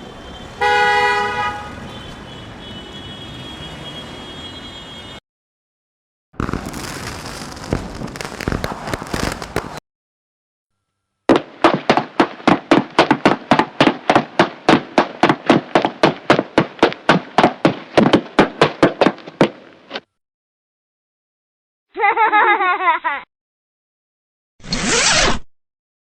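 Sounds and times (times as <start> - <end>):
noisy crackling blast: 6.4 - 9.8
sharp evenly spaced pops: 6.4 - 9.8, 11.3 - 19.6.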